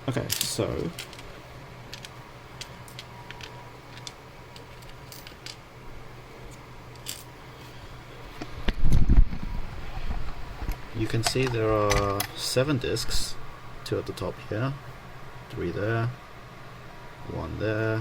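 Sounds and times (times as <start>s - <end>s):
steady low hum: 0.0s - 18.0s
small metal lock parts clicking: 1.9s - 5.6s.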